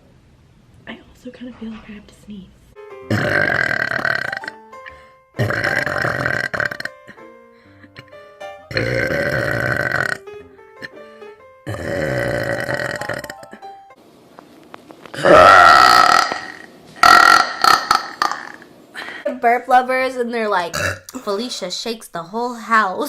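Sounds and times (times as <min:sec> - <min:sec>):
soft music: 0:02.7 - 0:14.9
girl burping: 0:03.1 - 0:04.5, 0:05.4 - 0:07.2, 0:08.7 - 0:10.2, 0:11.7 - 0:13.6, 0:15.2 - 0:18.6, 0:20.7 - 0:21.4.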